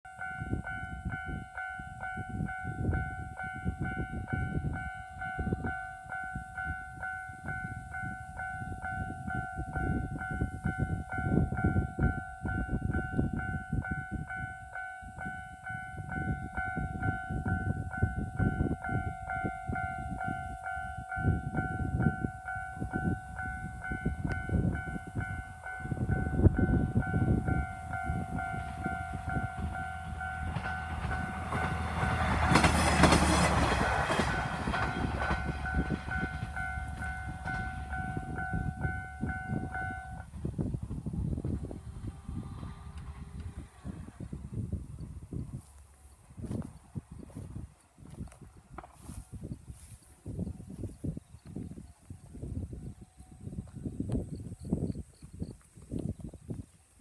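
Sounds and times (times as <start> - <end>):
level crossing warning bell ringing: 0.1 - 40.3.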